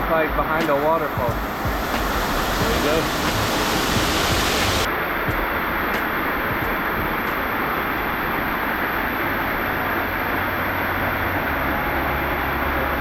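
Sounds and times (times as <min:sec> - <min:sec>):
waterfall roaring: 0:00.3 - 0:12.7.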